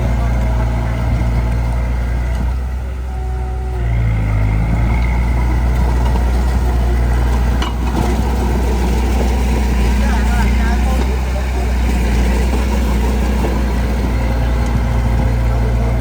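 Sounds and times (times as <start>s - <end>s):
diesel engine running under load: 0.0s - 16.0s.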